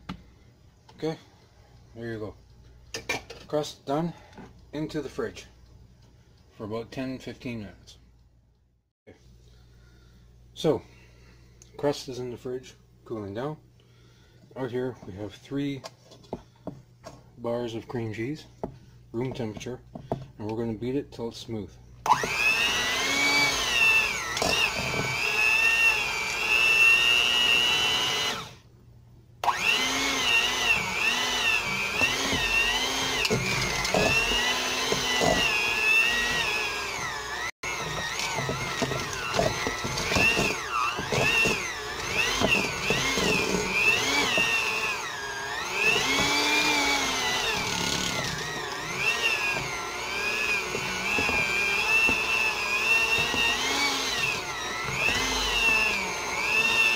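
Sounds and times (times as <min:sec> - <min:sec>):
electric mixer whining: 0:22.1 - 0:28.6, 0:29.4 - 0:56.9.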